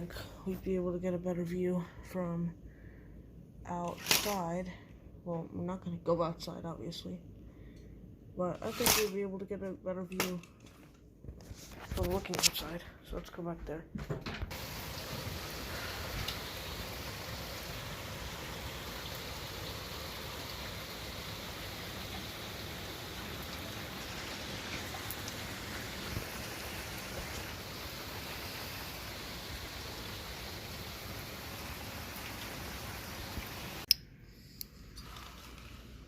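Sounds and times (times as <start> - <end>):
heavy rain falling: 14.5 - 33.9.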